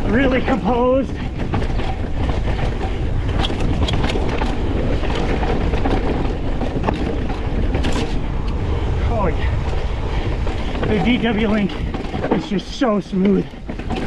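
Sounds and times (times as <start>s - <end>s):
mountain bike rumbling and rattling: 0.0s - 14.0s
sharp clacks of bike on bumps: 0.0s - 14.0s
wind buffeting microphone: 0.0s - 14.0s.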